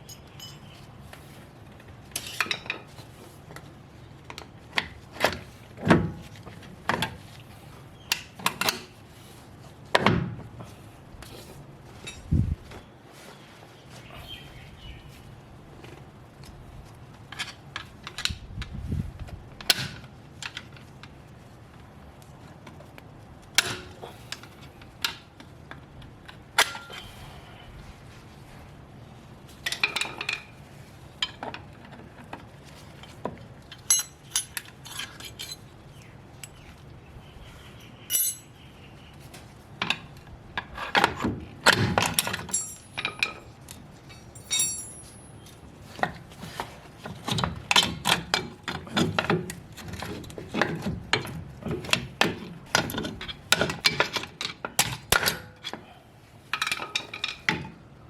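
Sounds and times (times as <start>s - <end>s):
metal clinks of hand tools: 0.0s - 0.8s, 33.9s - 35.6s, 38.1s - 38.5s, 42.5s - 43.4s, 44.1s - 45.4s.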